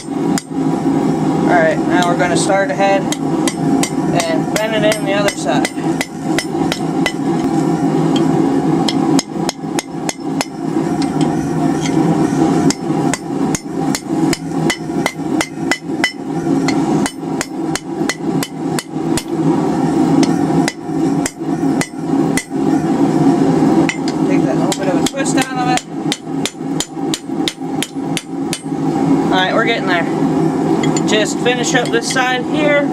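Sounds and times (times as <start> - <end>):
hammer ringing on hot steel: 3.0 - 7.4, 8.1 - 12.0, 12.7 - 19.3, 20.2 - 22.6, 23.9 - 28.8.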